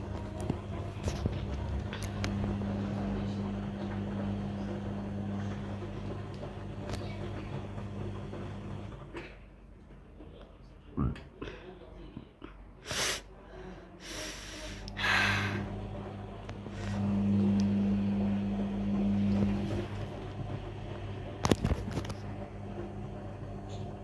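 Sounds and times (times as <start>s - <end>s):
washing machine hissing: 0.0s - 9.1s, 14.0s - 24.0s
washing machine humming: 0.0s - 9.4s, 14.1s - 24.0s.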